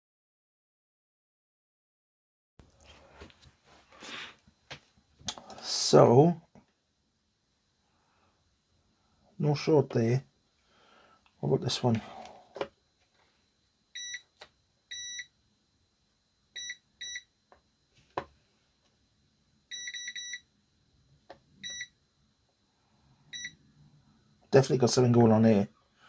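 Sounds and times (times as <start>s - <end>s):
multimeter continuity beeps: 13.9s - 14.3s, 14.9s - 15.4s, 16.5s - 17.3s, 19.7s - 20.5s, 21.6s - 22.0s, 23.3s - 23.6s.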